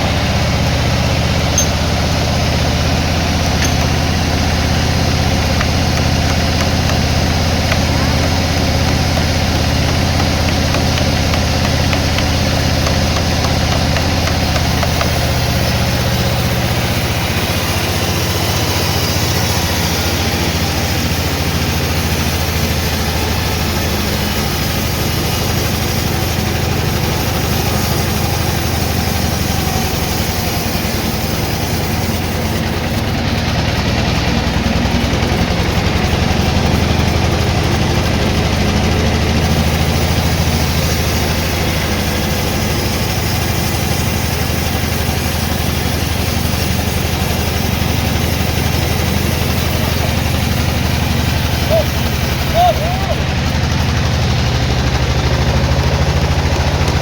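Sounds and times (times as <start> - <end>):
machinery engine droning: 0.0 - 57.0
mechanical rattle: 1.6 - 19.6.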